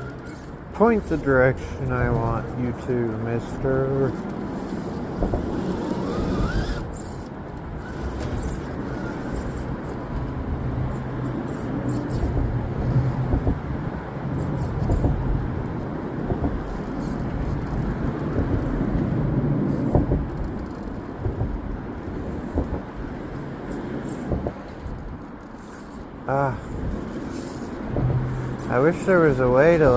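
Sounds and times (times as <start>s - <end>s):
electric motor whirring: 4.8s - 9.6s.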